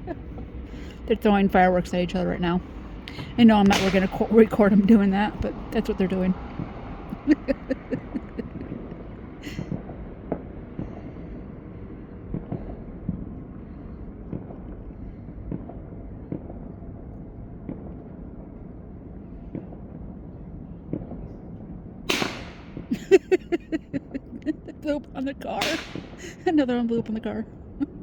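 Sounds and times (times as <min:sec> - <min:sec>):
faint firework pops: 0:03.1 - 0:04.4, 0:22.1 - 0:23.0, 0:25.6 - 0:26.3
rapid sharp firework cracks: 0:03.1 - 0:04.5, 0:22.1 - 0:23.0, 0:25.6 - 0:26.4
loud firework bang: 0:03.1 - 0:04.6, 0:22.1 - 0:23.1, 0:25.6 - 0:26.3.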